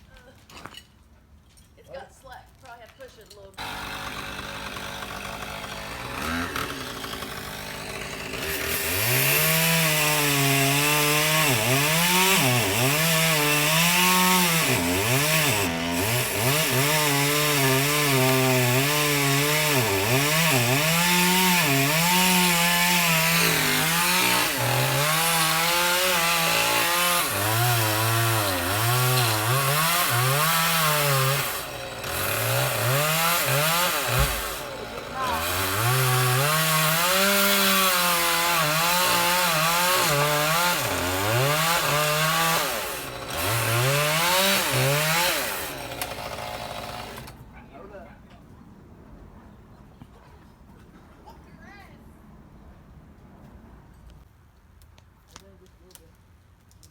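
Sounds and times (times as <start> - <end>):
chainsaw cutting into a tree: 3.6 - 47.4.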